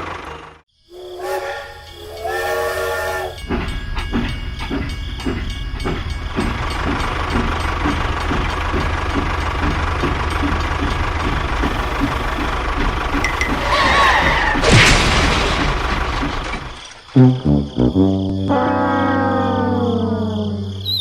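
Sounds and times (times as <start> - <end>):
train horn blasts: 0.9 - 3.5
small engine knocking hum: 3.4 - 14.6.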